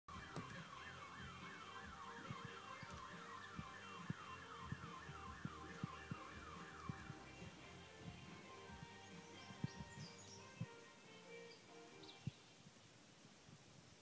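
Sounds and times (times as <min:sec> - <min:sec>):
electronic alarm siren warbling: 0:00.1 - 0:09.7.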